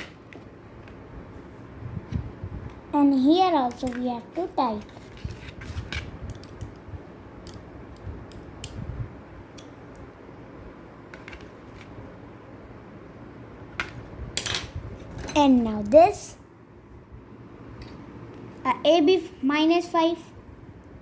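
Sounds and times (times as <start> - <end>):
clicks and taps of metal parts: 7.4 - 8.8.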